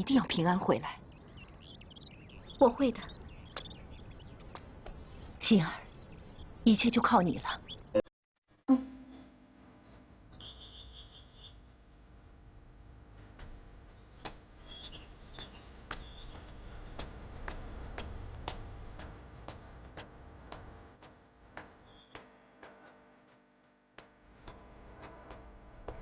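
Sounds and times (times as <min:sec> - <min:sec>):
bird chirps: 0:00.0 - 0:08.0, 0:10.3 - 0:11.6, 0:14.7 - 0:16.4.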